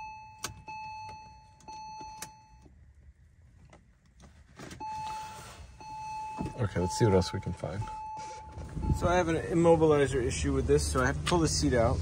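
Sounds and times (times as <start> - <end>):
electronic warning beeps: 0.0 - 2.6, 4.8 - 9.7.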